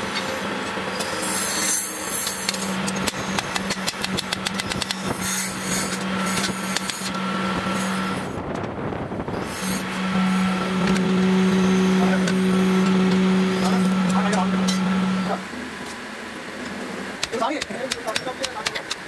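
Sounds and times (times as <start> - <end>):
machine hum: 0.0 - 17.2
metal grinding: 0.9 - 8.4, 9.3 - 15.5.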